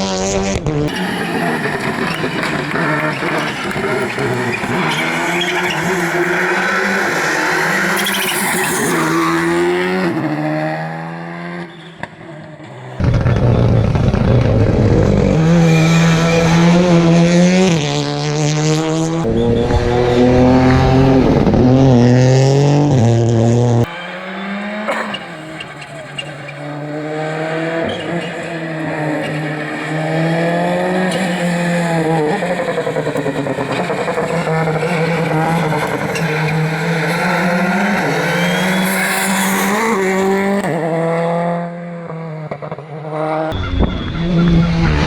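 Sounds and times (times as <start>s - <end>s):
close car engine: 0.0s - 45.0s
rally car engines revving: 0.0s - 45.0s
tyre squeal: 0.9s - 10.6s, 11.6s - 14.5s, 23.8s - 40.9s.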